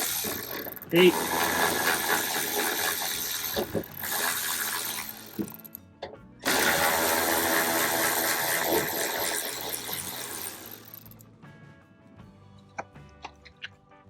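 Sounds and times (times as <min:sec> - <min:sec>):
ratchet wrench clicking: 0:00.0 - 0:05.8, 0:06.5 - 0:11.2
background music: 0:00.0 - 0:14.0.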